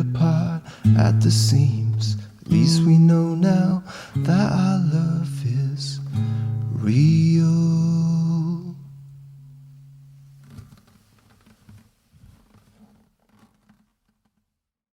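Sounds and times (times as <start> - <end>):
acoustic guitar chord ringing: 0.0 - 10.4
faint rustles and knocks: 10.2 - 14.6.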